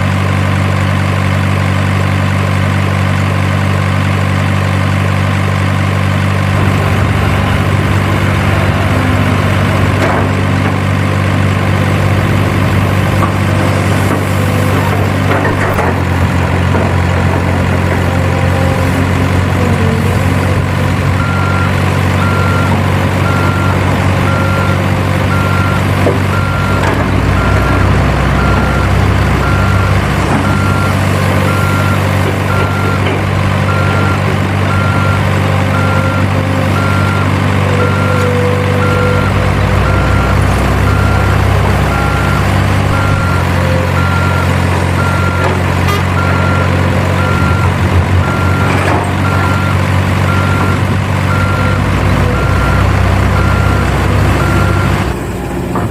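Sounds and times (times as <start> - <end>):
diesel truck engine idling: 0.0 - 55.9
reversing alarm beeping: 20.6 - 55.0.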